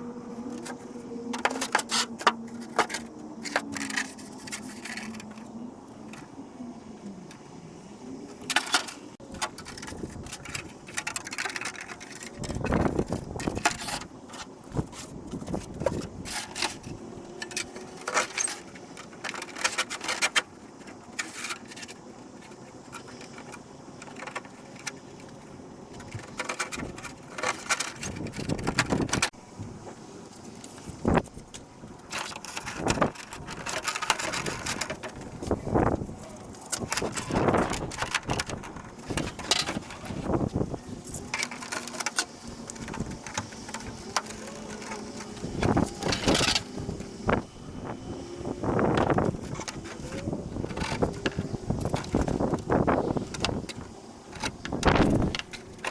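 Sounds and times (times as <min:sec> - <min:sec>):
plastic parts clicking and scraping: 0:00.0 - 0:29.4, 0:30.3 - 0:55.9.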